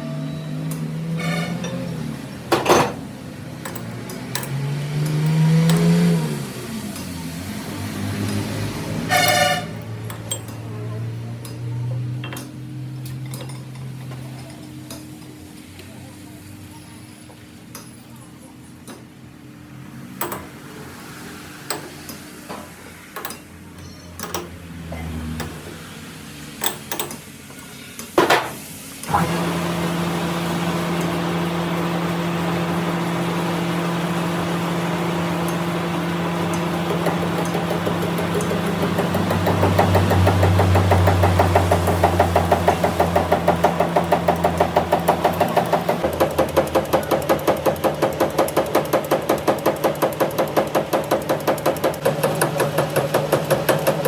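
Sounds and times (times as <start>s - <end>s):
metal clicks and knocks: 12.2s - 15.0s
metal lathe running: 29.1s - 54.0s.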